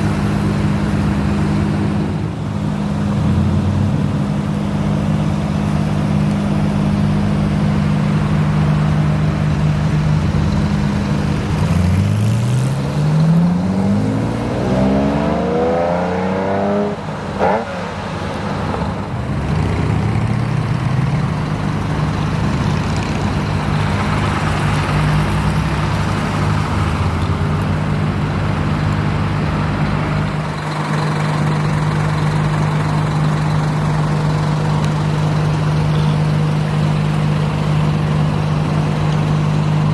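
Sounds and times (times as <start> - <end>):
sports car engine accelerating: 3.0 - 18.2
engine idling: 20.2 - 39.9.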